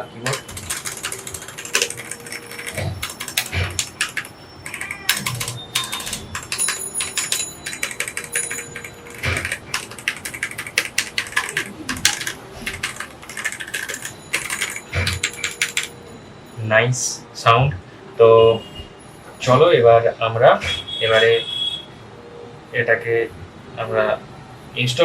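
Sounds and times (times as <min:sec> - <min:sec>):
mechanical keyboard typing: 0:00.2 - 0:16.0.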